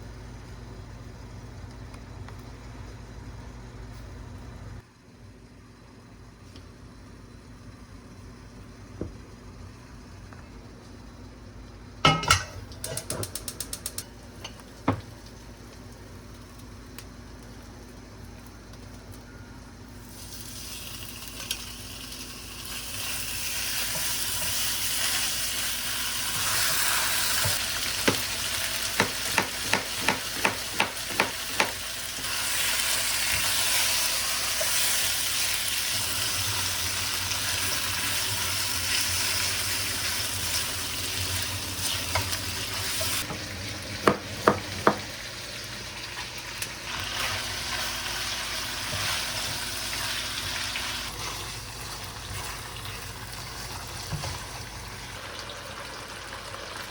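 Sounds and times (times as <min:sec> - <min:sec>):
food sizzling in a pan: 0:20.0 - 0:56.9.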